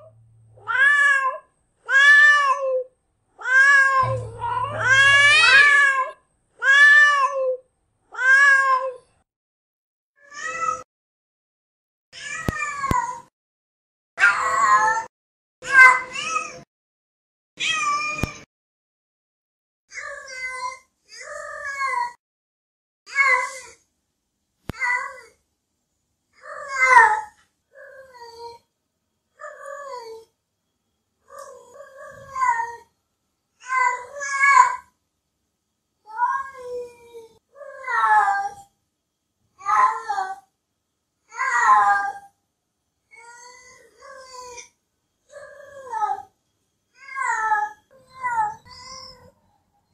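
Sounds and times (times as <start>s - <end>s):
cat meowing: 0.6s - 7.6s, 8.2s - 9.0s, 17.6s - 18.4s, 47.0s - 49.3s
cat meowing cries: 0.6s - 9.0s, 10.2s - 10.8s, 12.2s - 13.3s, 14.2s - 16.7s, 17.6s - 18.5s, 19.9s - 22.2s, 26.4s - 28.6s, 31.3s - 32.9s, 36.1s - 38.7s, 41.3s - 42.3s, 47.0s - 49.4s.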